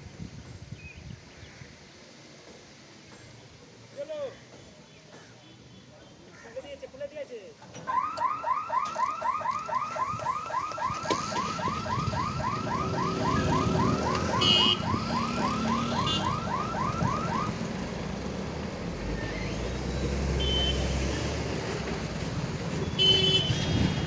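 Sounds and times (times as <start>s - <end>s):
rising electronic warning chirps: 8.0s - 17.5s
vehicle horn toots: 14.3s - 15.0s, 15.9s - 16.3s, 20.4s - 20.9s, 22.8s - 24.0s.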